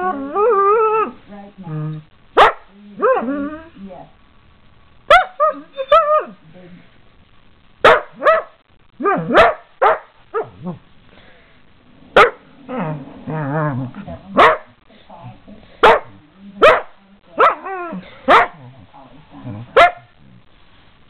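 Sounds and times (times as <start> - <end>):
dog barking: 2.4 - 2.7, 5.1 - 6.3, 7.8 - 10.6, 12.2 - 12.4, 14.4 - 14.7, 15.8 - 17.6, 18.3 - 18.6, 19.8 - 20.1
dog growling: 11.9 - 14.4, 17.6 - 20.4.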